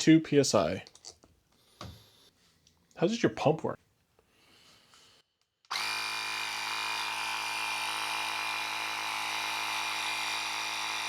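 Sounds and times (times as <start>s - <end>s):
tire inflator motor whine: 5.7s - 11.0s.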